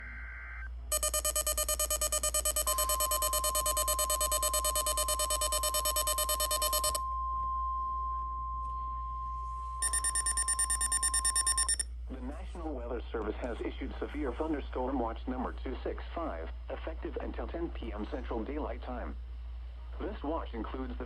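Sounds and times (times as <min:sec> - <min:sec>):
rapid shrill alarm beeping: 0:00.9 - 0:07.2, 0:09.8 - 0:11.8
steady warning tone: 0:00.9 - 0:11.8.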